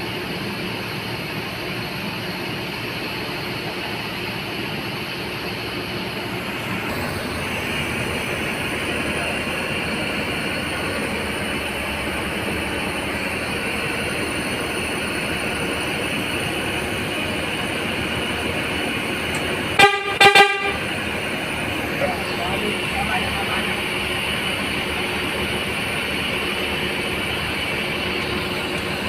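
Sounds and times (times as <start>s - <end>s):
bus diesel engine running: 0.0s - 29.0s
bus horn toots: 19.7s - 21.1s.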